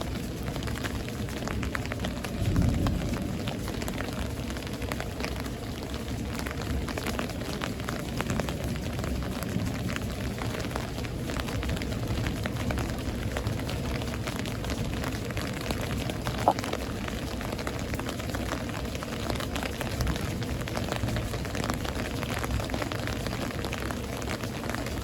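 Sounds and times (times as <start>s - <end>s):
heavy rain: 0.0s - 25.0s
raindrops ticking close by: 0.0s - 25.0s.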